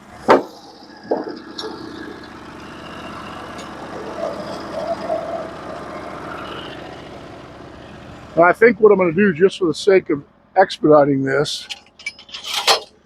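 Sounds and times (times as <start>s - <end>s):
band sawmill cutting wood: 0.0s - 9.2s.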